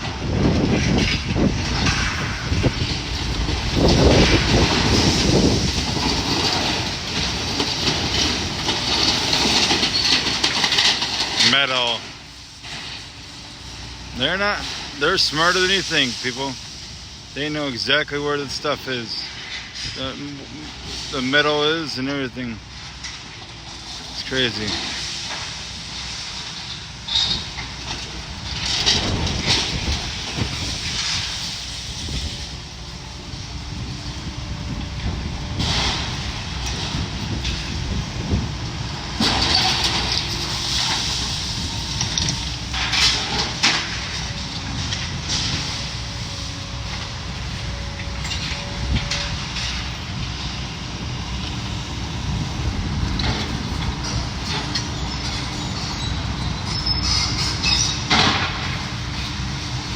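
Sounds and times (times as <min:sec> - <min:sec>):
debris knocking and scraping: 0:00.0 - 0:12.0
debris crashes: 0:00.0 - 0:13.2, 0:17.4 - 0:32.6, 0:33.7 - 0:47.5, 0:48.2 - 0:50.2, 0:52.8 - 0:59.4
metal debris clanking and scraping: 0:00.0 - 0:13.4, 0:17.4 - 0:32.6, 0:33.3 - 0:50.6, 0:52.8 - 0:59.6
demolition machinery engine rumble: 0:00.0 - 0:59.9.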